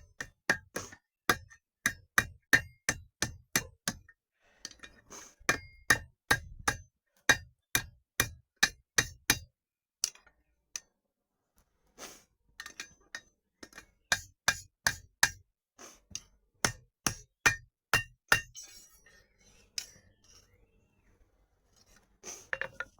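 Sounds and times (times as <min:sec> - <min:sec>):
hammer striking metal on anvil: 0:14.1 - 0:15.4, 0:17.1 - 0:18.7.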